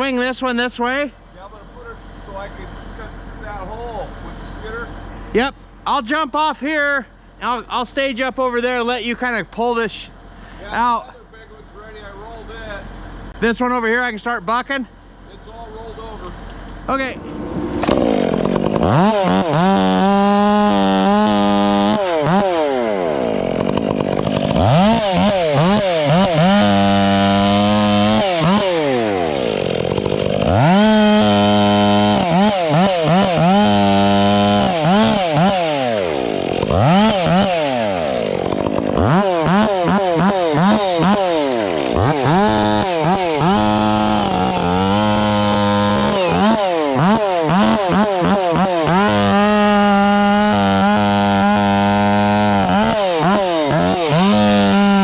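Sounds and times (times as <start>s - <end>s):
steady low hum: 14.8s - 19.6s
chainsaw cutting a log: 15.6s - 55.0s.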